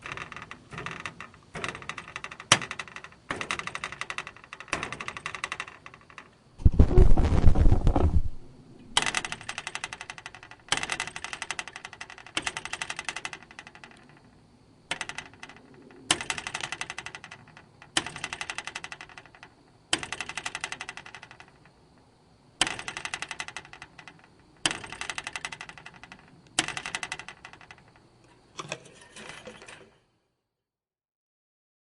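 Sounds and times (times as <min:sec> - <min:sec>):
coil spring twanging: 0:06.6 - 0:09.6.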